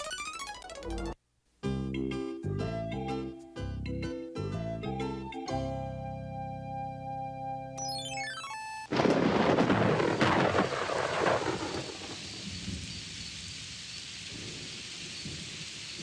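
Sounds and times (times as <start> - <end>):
heavy rain: 8.9 - 16.0
thunderclap rumbling: 8.9 - 16.0.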